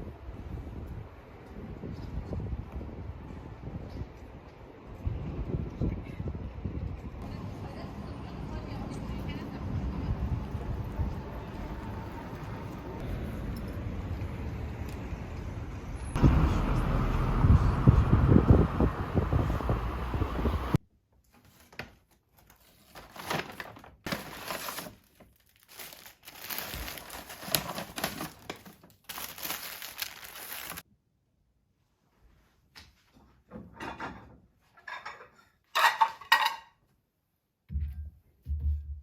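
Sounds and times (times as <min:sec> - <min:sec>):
steady vehicle noise: 0:06.4 - 0:20.8.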